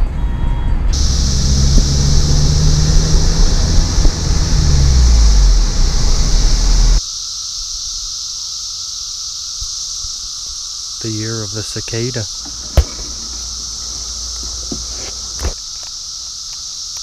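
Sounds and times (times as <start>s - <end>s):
heavy low rumble: 0.0s - 7.0s, 12.4s - 15.4s
cicadas droning: 0.8s - 17.0s.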